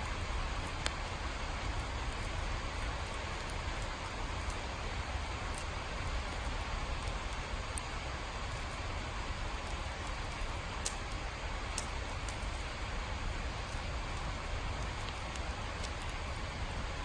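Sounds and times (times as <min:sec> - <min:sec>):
steady rain hiss: 0:00.0 - 0:17.0
drip ticks: 0:09.6 - 0:12.6.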